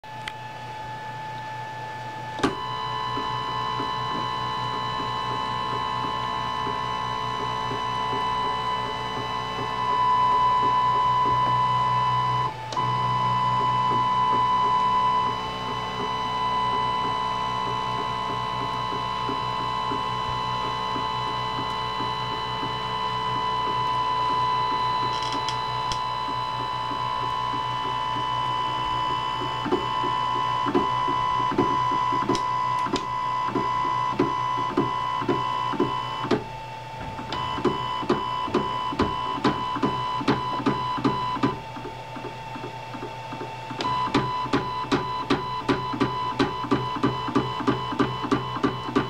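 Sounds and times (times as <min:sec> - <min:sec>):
stepper motors whining: 0:02.3 - 0:49.0
printer axis knocking: 0:37.2 - 0:49.0.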